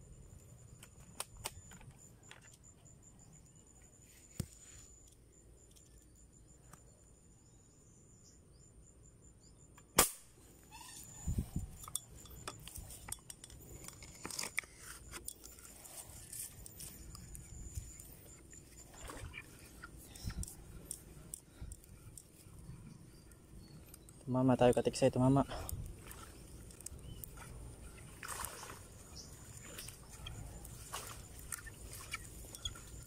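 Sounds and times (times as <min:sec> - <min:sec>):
air rifle shot: 0:10.0 - 0:10.3.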